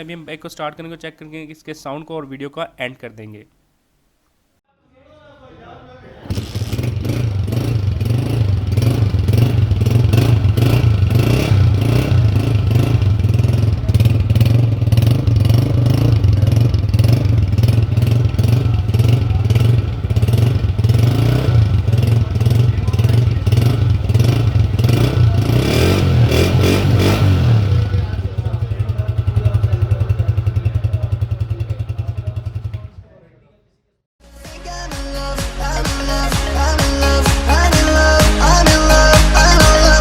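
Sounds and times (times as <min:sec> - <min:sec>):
motorcycle engine running: 0:06.3 - 0:33.0.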